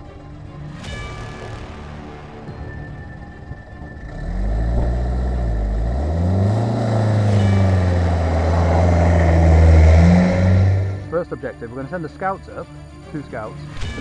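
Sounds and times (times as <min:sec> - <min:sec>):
vehicle engine accelerating: 0:03.2 - 0:12.9.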